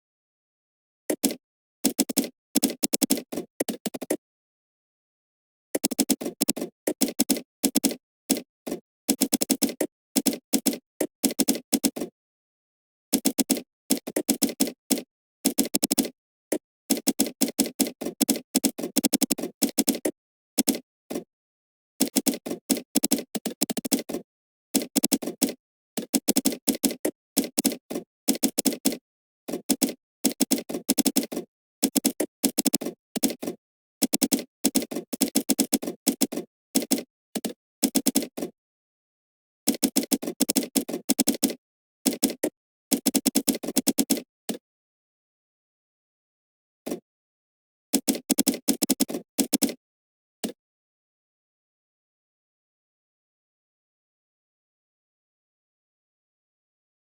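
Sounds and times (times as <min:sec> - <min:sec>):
keyboard typing: 0:01.1 - 0:04.2, 0:05.7 - 0:12.0, 0:13.2 - 0:16.1, 0:16.9 - 0:21.2, 0:22.0 - 0:24.2, 0:24.8 - 0:38.5, 0:39.7 - 0:44.2, 0:48.0 - 0:49.8.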